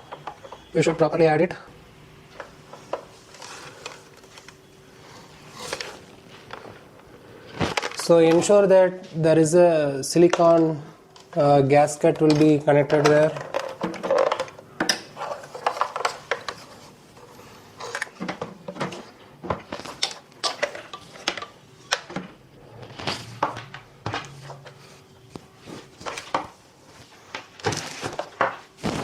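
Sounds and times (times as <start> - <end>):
plastic parts knocking and clicking: 0.0 - 0.7, 12.0 - 16.7, 17.8 - 25.4.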